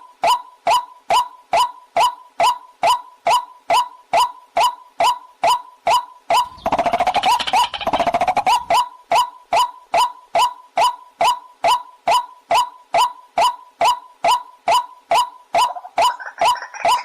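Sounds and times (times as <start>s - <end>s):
bird rapid chattering: 6.4s - 8.8s, 15.6s - 17.0s.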